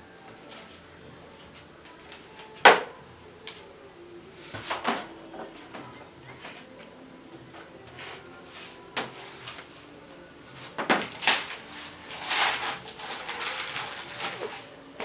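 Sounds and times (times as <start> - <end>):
rustling scrape: 7.9 - 10.0, 10.6 - 14.8.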